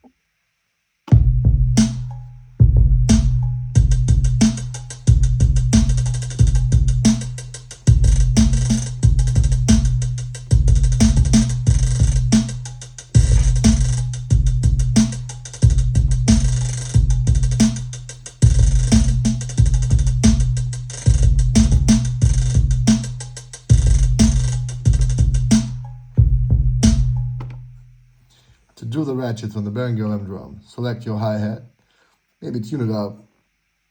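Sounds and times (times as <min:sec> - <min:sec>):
deep bass notes: 0:01.1 - 0:28.0
fast hi-hat rolls: 0:01.2 - 0:27.4.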